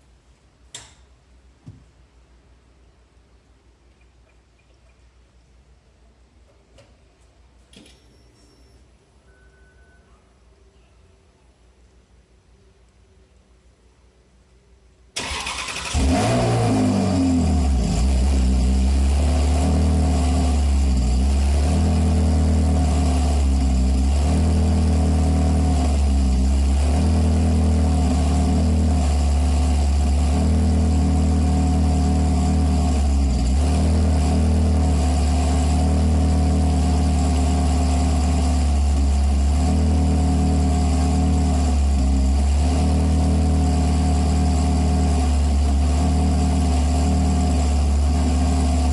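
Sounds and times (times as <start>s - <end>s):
car engine cranking: 15.2s - 18.7s
car engine revving and idling: 15.2s - 48.9s.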